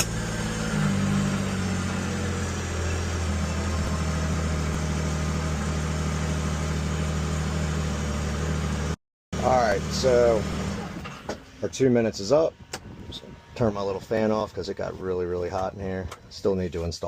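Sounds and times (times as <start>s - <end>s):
engine idling: 0.0s - 15.6s.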